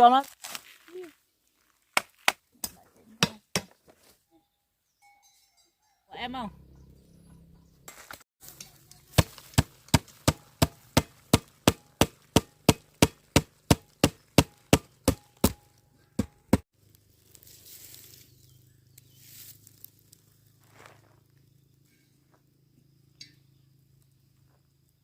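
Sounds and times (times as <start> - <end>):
blade chopping: 9.0 - 16.6.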